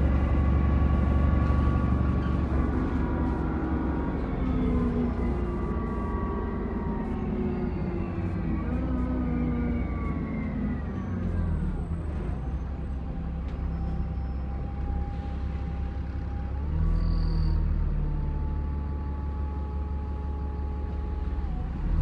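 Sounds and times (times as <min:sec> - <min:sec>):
turbo whine: 0:00.0 - 0:11.5
bus engine rumbling: 0:00.0 - 0:22.0.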